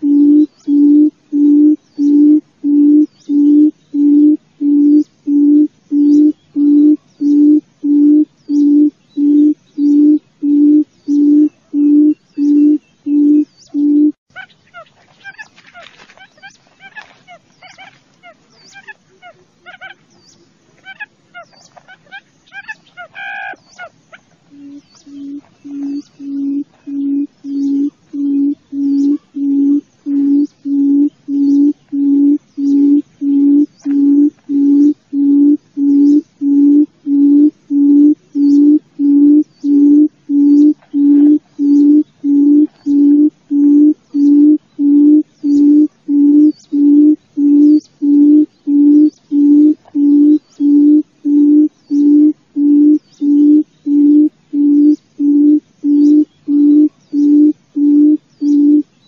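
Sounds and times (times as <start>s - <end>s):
quail hooting: 0.0s - 20.1s, 20.8s - 59.0s.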